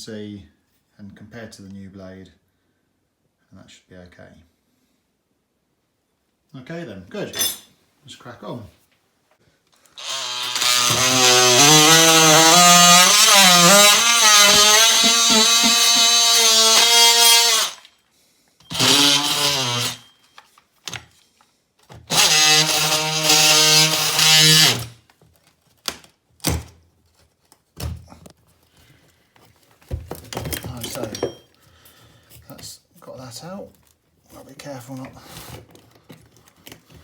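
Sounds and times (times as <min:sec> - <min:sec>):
oscillating multi-tool cutting board: 0:10.0 - 0:17.9, 0:18.7 - 0:20.1, 0:22.1 - 0:24.9.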